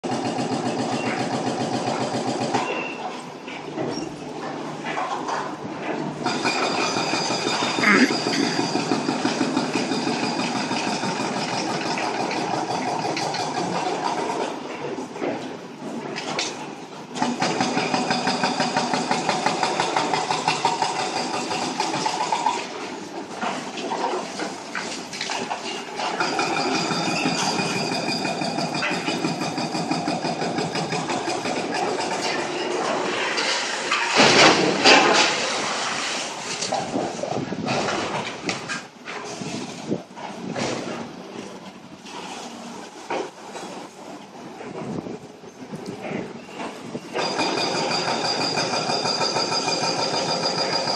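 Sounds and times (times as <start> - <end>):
demolition machinery scraping and rattling: 28.5 - 49.0.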